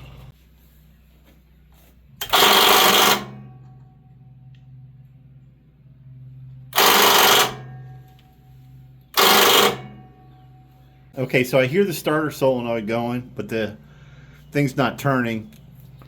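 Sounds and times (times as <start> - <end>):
starter solenoid chattering: 2.2 - 3.5, 6.7 - 8.2, 9.1 - 10.4.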